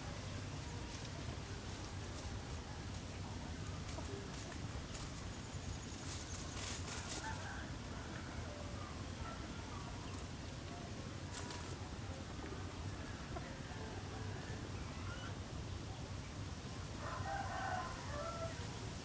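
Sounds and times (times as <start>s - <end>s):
rooster crowing: 7.0s - 8.8s, 17.0s - 18.8s.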